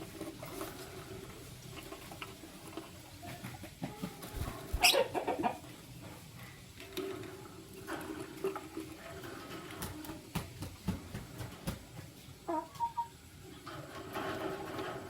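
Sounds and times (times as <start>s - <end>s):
lovebirds chattering: 4.5s - 5.4s.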